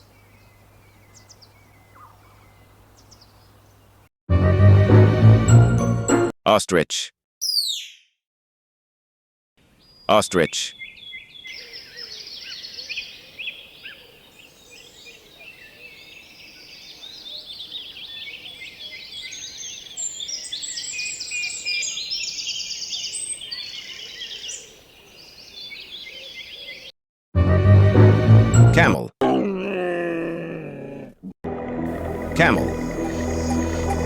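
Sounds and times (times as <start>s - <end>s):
birds chirping and twittering: 0.0s - 4.1s, 7.4s - 8.1s, 9.6s - 26.9s, 31.9s - 34.0s.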